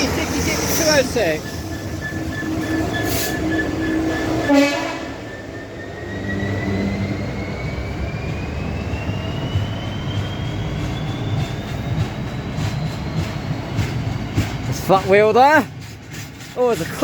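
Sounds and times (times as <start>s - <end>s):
diesel locomotive rumble: 0.0s - 17.0s
freight train passing: 0.0s - 17.0s
thin rising whine: 5.2s - 12.8s.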